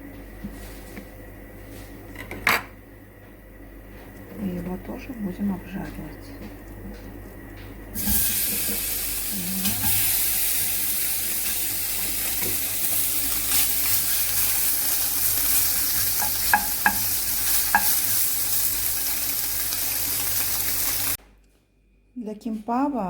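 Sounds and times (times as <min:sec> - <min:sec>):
meat sizzling in a pan: 0:08.0 - 0:21.2.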